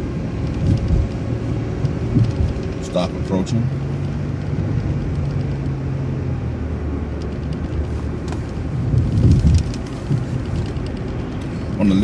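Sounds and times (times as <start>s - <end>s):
bus engine and road rumble: 0.0s - 12.0s
light clicks and rattles: 1.8s - 5.7s, 7.1s - 12.0s.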